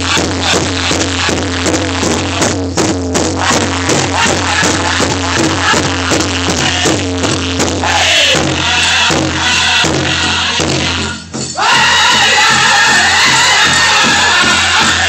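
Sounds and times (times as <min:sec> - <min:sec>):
singers chanting: 0:00.0 - 0:02.6, 0:03.2 - 0:15.0
big drum pounding: 0:00.0 - 0:15.0
crowd cheering and whooping: 0:11.6 - 0:15.0.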